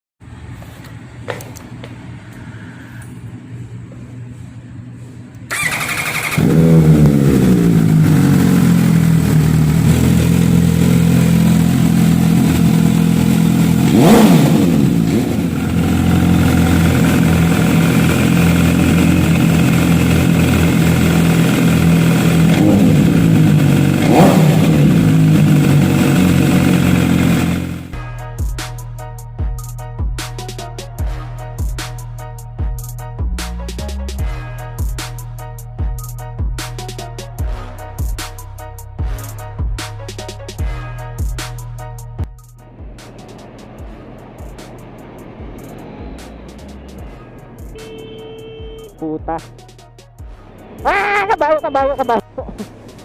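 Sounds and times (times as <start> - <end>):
starter whine: 5.4 - 27.9
motorcycle engine idling: 5.5 - 28.0
throttle blips: 50.9 - 52.4.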